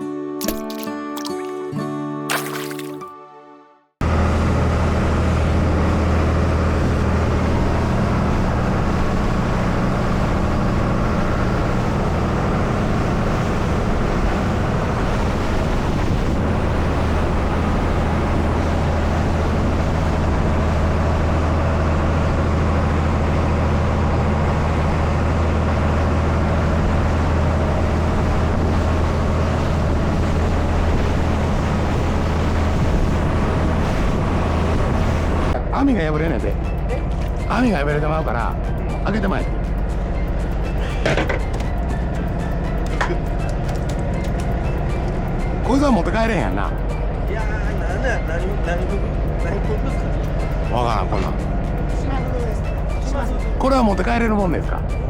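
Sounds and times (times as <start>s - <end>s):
hiss of boat moving through water: 4.0s - 35.6s
boat engine droning: 4.0s - 55.0s.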